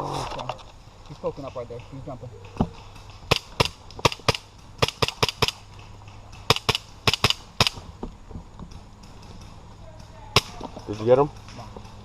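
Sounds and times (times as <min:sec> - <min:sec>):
airsoft gun shots: 0:03.3 - 0:05.6, 0:06.5 - 0:07.8.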